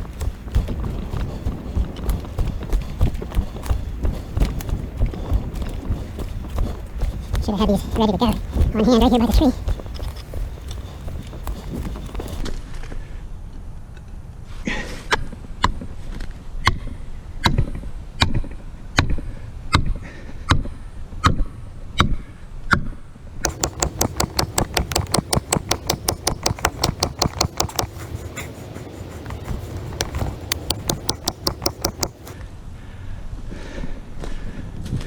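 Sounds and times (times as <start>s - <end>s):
hammer striking wedge: 0.0s - 12.4s, 23.5s - 32.4s.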